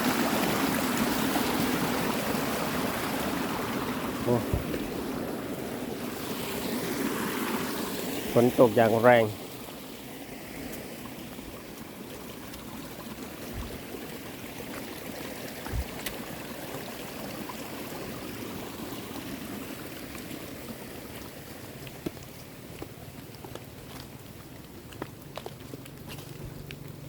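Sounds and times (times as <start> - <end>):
heavy rain and runoff water: 0.0 - 27.0
faint low thumps: 4.4 - 5.1, 15.7 - 16.1.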